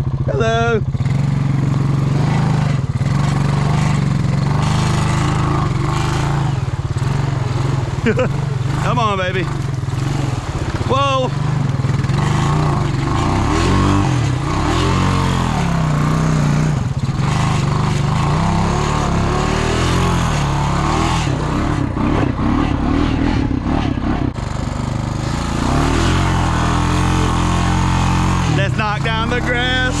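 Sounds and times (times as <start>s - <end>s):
atv engine revving: 0.0s - 30.0s.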